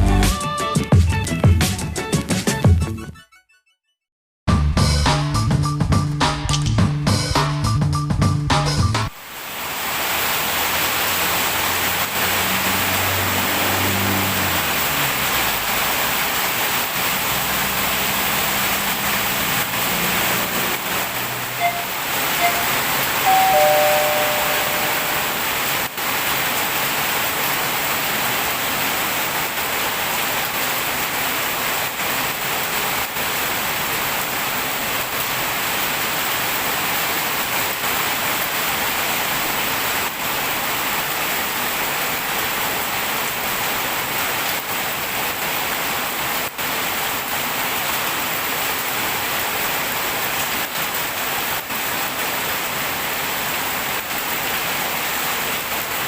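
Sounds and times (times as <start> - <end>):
heavy rain falling: 9.1 - 56.0
short steady tones: 21.6 - 25.4.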